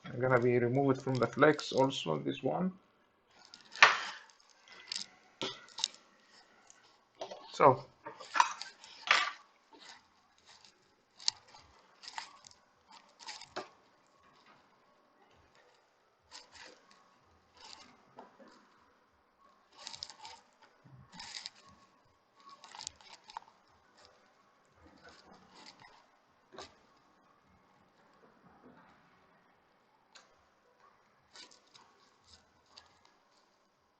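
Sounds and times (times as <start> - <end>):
small hand tools scraping and ticking: 0.3 - 2.0, 3.3 - 14.6, 15.4 - 18.8, 19.7 - 27.0, 31.3 - 33.6.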